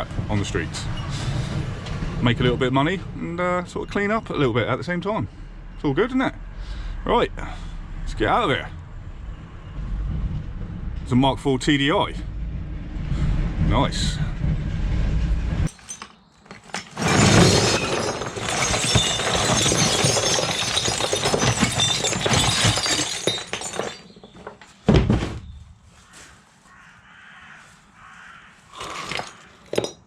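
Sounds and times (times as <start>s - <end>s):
low engine rumble: 6.4s - 15.7s
thump: 24.9s - 25.5s.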